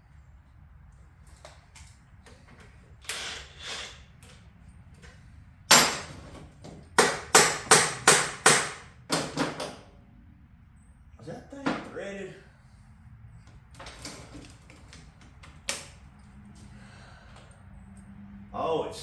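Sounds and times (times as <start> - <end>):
hammer striking metal: 5.7 - 6.2, 7.0 - 8.8.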